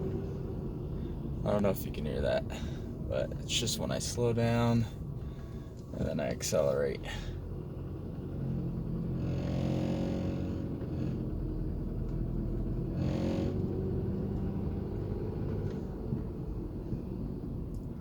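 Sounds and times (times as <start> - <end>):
car engine accelerating: 0.0 - 1.5, 7.4 - 18.0
buzzing dashboard rattle: 8.2 - 16.6.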